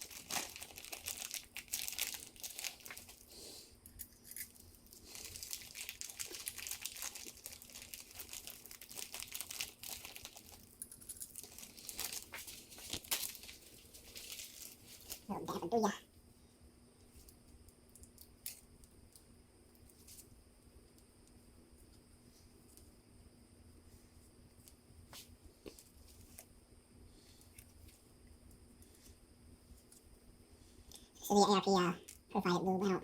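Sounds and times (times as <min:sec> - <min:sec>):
crinkling handling noise: 0:00.0 - 0:15.3, 0:24.6 - 0:26.5
faint steady hum: 0:00.0 - 0:33.0.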